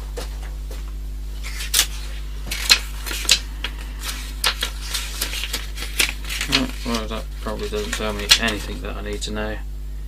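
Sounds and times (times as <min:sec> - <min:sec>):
low hum: 0:00.0 - 0:10.0
small objects clicking and rustling: 0:04.0 - 0:08.8.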